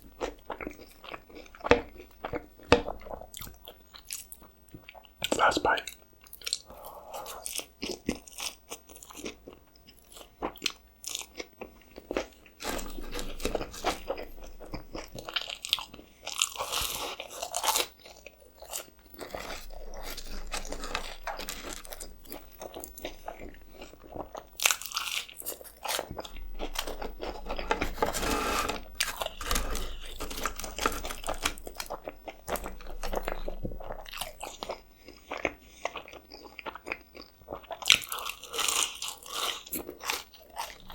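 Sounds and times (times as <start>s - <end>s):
person eating crunchy food: 0.0s - 40.9s.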